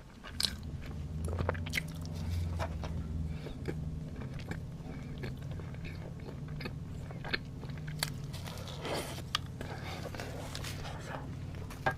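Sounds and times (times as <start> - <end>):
bread being bitten and chewed: 0.0 - 11.8
steady low hum: 0.0 - 11.9
crunchy rustle: 7.8 - 11.9.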